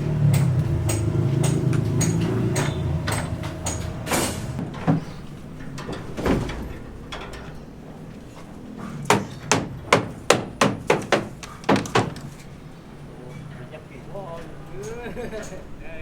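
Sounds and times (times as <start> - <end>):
machine humming: 0.0 - 11.4
loud knocks: 0.0 - 12.5.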